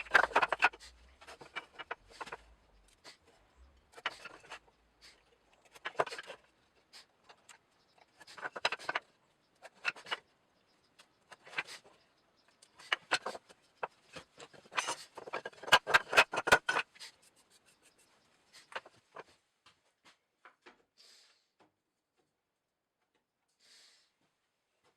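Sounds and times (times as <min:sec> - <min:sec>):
wood scraping and rubbing: 0:00.0 - 0:06.5, 0:08.1 - 0:10.2, 0:12.7 - 0:17.0.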